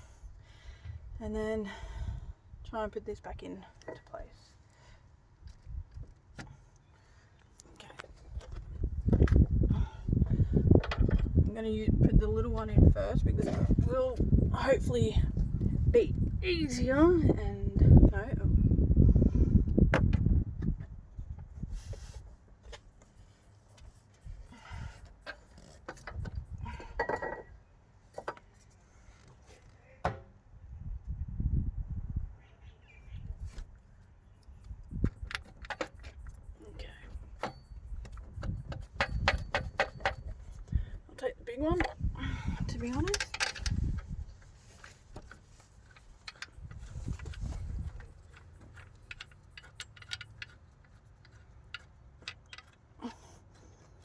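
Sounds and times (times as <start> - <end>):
metal tools clinking: 45.8 - 52.9.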